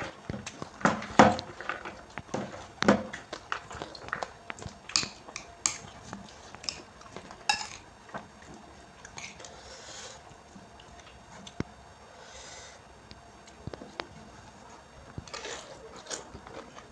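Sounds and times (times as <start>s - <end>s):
hissy eating noises: 0.0s - 16.9s
utensil clicking against a dish: 4.1s - 5.9s.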